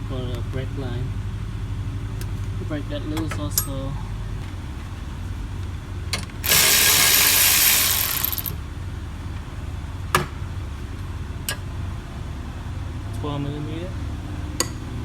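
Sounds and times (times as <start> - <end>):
ratchet wrench clicking: 6.4 - 8.6.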